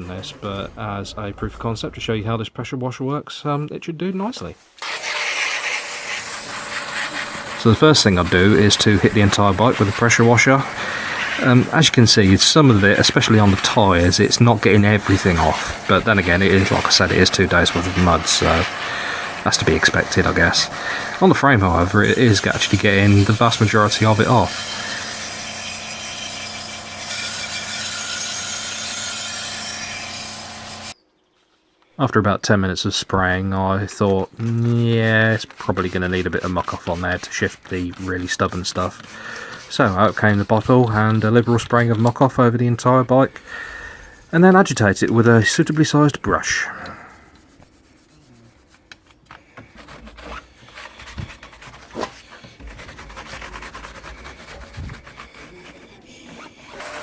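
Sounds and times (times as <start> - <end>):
water jet hissing: 4.7 - 31.0, 33.9 - 48.6
brush scrubbing muddy bike: 4.8 - 31.0, 33.2 - 48.9, 49.7 - 57.0
pressure washer pump humming: 4.8 - 31.0, 34.4 - 42.2.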